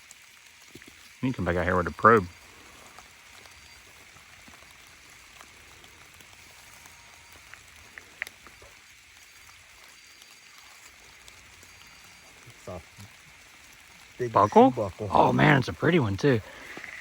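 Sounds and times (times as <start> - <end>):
light rain hissing: 0.0 - 17.0
faint sharp ticks: 2.2 - 13.8.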